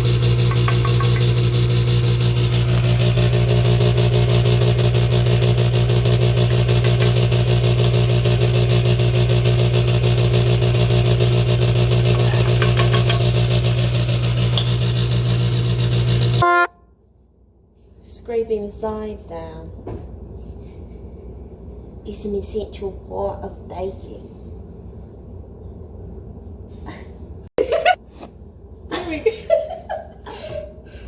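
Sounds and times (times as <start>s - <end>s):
electric mixer humming: 0.0s - 16.4s.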